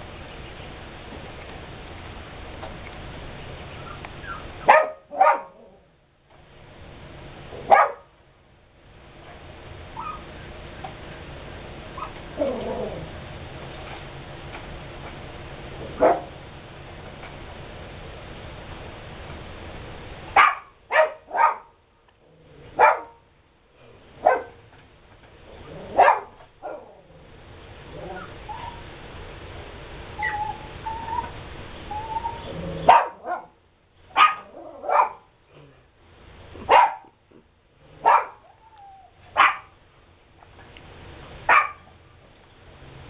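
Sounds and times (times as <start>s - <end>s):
dogs barking: 4.2s - 5.8s, 7.6s - 8.1s, 15.8s - 16.4s, 20.4s - 21.8s, 22.7s - 23.2s, 24.2s - 24.6s, 25.7s - 27.0s, 32.2s - 35.3s, 36.6s - 37.2s, 37.9s - 38.7s, 39.3s - 39.8s, 41.5s - 41.9s
faint high-pitched calls: 30.2s - 32.6s.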